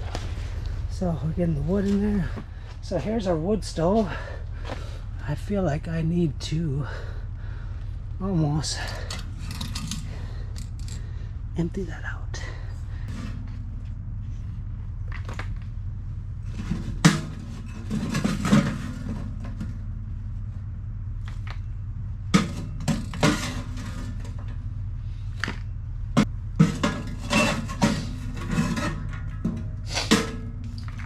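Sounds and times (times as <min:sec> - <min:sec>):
metal stove clanking and scraping: 0:08.8 - 0:11.0, 0:16.4 - 0:19.9, 0:22.3 - 0:24.6, 0:26.2 - 0:31.0.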